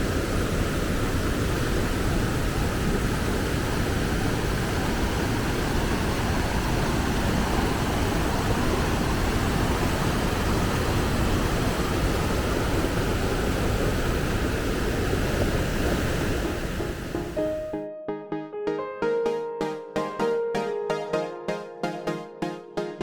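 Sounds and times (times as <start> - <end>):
rushing river water: 0.0 - 17.4.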